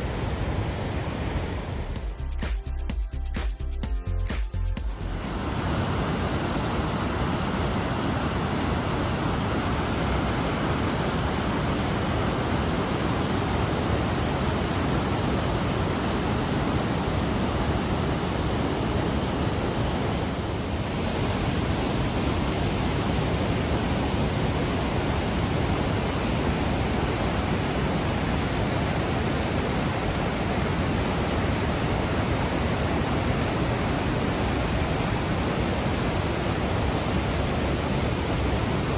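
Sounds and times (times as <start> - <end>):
waterfall rushing: 5.0 - 38.9.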